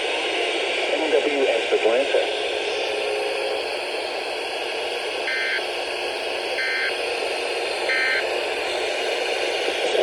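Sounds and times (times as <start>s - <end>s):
radio hiss: 0.0s - 10.0s
digital data tone bursts: 5.3s - 5.6s, 6.6s - 6.9s, 7.9s - 8.2s.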